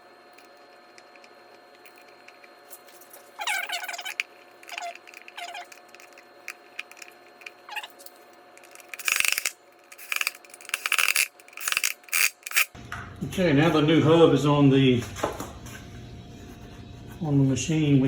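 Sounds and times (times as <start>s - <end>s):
metal parts clinking and scraping: 0.3s - 12.8s.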